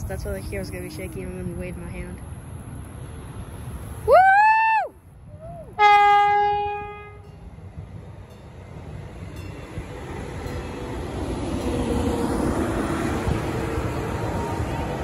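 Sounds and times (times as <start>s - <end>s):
train rumbling: 0.0s - 15.0s
train horn blast: 5.8s - 7.4s.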